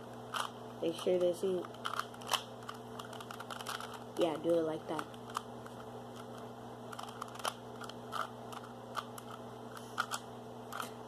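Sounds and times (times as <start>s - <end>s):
steady low hum: 0.0s - 11.0s
plastic puzzle cube clicks: 6.2s - 9.4s, 10.0s - 10.9s.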